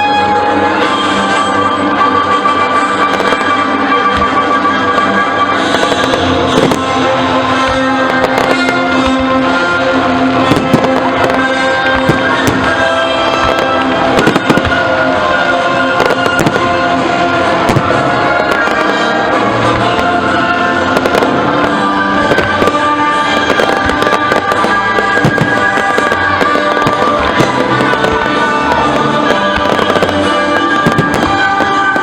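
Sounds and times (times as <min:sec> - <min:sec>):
fireworks bangs and crackles: 0:00.0 - 0:32.0
loud music playing: 0:00.0 - 0:32.0.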